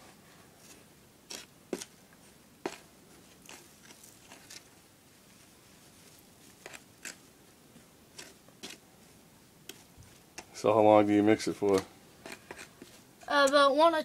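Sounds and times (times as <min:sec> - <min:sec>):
spoon scraping in plastic bottle: 0:03.4 - 0:04.7, 0:06.5 - 0:07.2, 0:08.1 - 0:08.8, 0:12.2 - 0:13.3.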